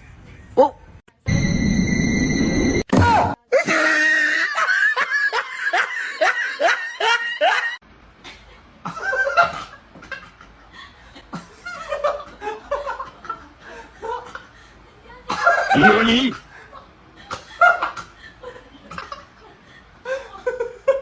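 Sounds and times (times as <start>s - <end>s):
person laughing hard: 3.6s - 7.8s.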